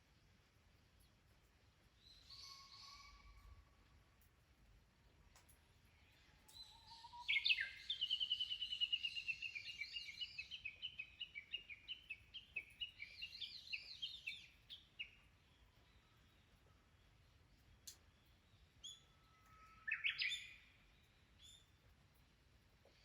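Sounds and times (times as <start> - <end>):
songbird singing: 2.0 - 3.5, 5.9 - 21.9.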